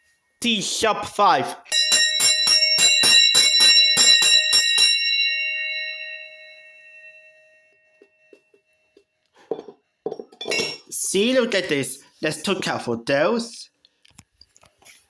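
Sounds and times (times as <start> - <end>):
handbell ringing rapidly: 1.7 - 6.8.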